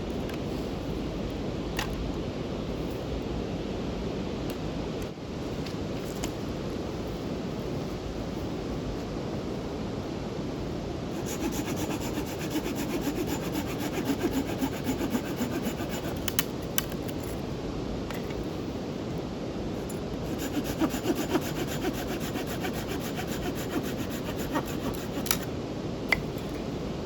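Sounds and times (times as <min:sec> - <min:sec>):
hand saw cutting wood: 0:11.1 - 0:16.5, 0:20.2 - 0:25.5.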